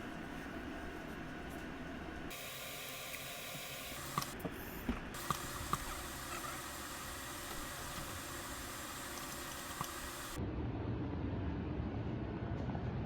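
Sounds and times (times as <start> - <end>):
steady hiss: 5.2 - 10.4.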